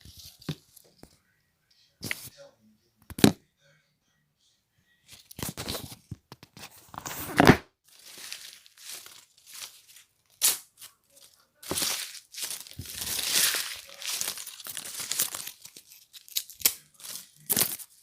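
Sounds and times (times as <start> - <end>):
crinkling and tearing: 5.2 - 18.0.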